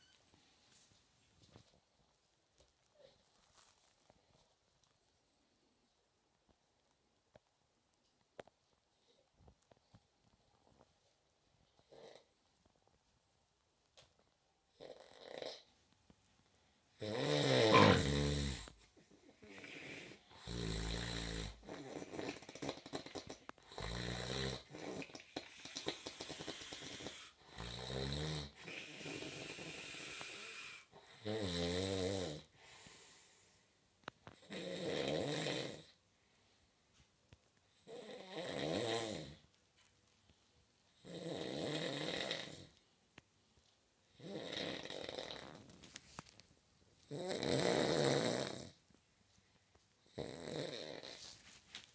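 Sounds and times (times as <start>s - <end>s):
person snoring loudly: 17.0s - 18.7s
breathy hissing exhales: 17.6s - 18.3s.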